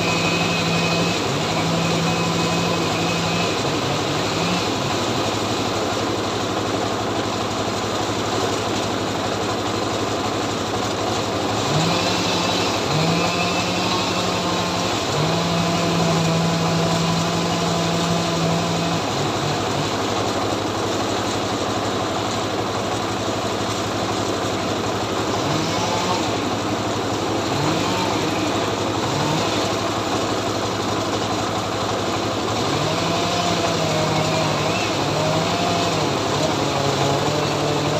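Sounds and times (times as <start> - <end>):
two-stroke chainsaw engine running: 0.0 - 37.9.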